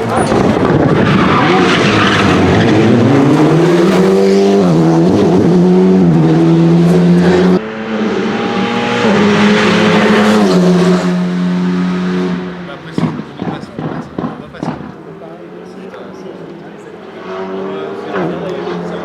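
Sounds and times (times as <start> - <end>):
rally car engine accelerating: 0.0 - 19.0.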